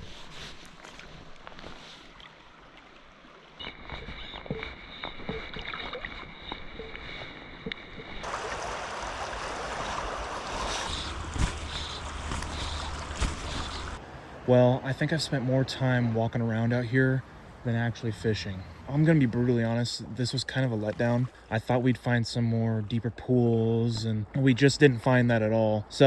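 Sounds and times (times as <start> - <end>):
flowing water rushing: 8.2 - 19.6.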